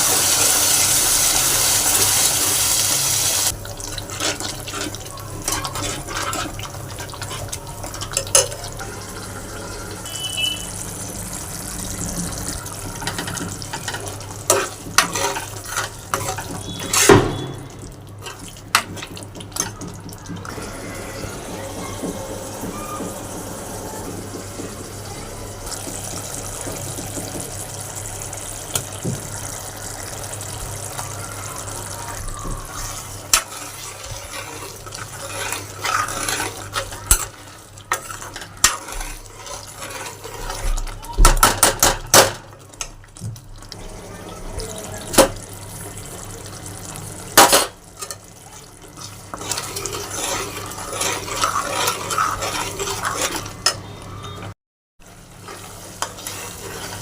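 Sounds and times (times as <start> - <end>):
utensils clattering against pans: 3.4 - 10.6, 11.5 - 25.0, 32.2 - 43.0, 44.0 - 45.8, 46.8 - 54.6.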